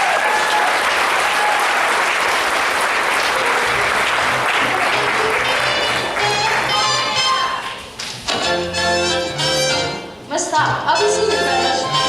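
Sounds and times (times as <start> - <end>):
audience applauding: 0.0 - 7.9
quiet music: 8.4 - 12.0.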